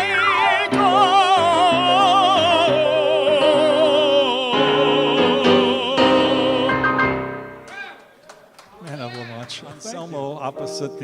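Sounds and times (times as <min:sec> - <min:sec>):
man singing with vibrato: 0:00.0 - 0:07.6
sustained accompaniment chords: 0:00.0 - 0:07.6.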